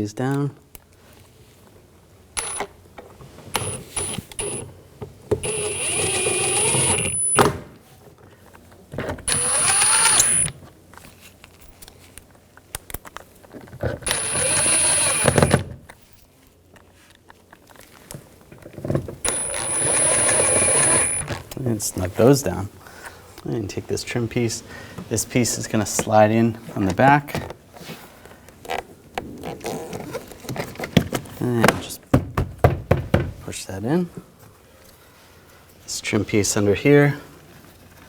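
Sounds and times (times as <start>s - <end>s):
cordless power driver whining: 2.4s - 2.7s, 3.5s - 4.7s, 5.4s - 7.6s, 9.3s - 10.6s, 14.0s - 15.7s, 19.2s - 21.3s.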